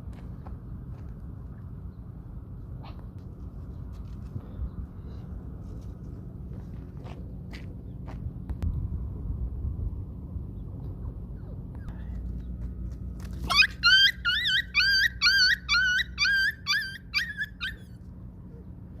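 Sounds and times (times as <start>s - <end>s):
dog whining yelps: 13.4s - 18.7s.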